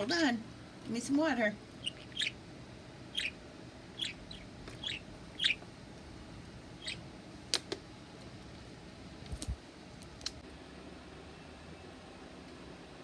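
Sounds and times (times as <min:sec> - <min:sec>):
budgerigar chirping: 0:01.8 - 0:02.4, 0:03.1 - 0:03.4, 0:04.0 - 0:05.6, 0:06.8 - 0:07.0.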